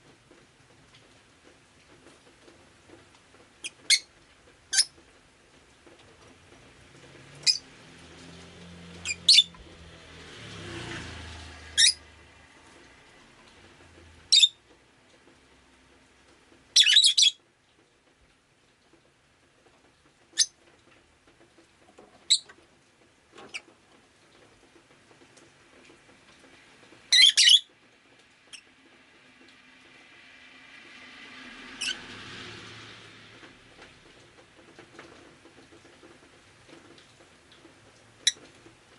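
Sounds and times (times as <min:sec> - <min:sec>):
passing vehicle engine hum: 0:06.1 - 0:16.4, 0:27.8 - 0:37.0
lovebird chirping: 0:09.0 - 0:09.6, 0:11.8 - 0:12.0, 0:14.3 - 0:14.6, 0:16.8 - 0:17.4, 0:27.1 - 0:27.7.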